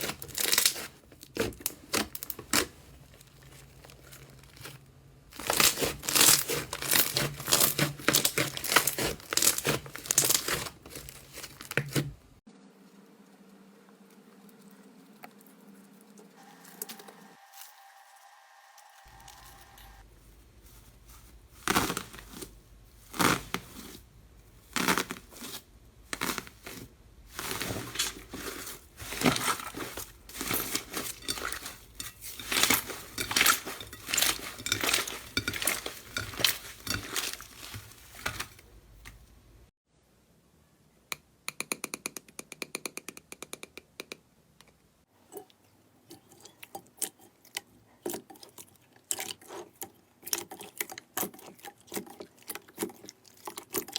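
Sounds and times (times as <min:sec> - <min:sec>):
slime crinkling and crackling: 0:00.0 - 0:12.4, 0:20.0 - 0:39.3.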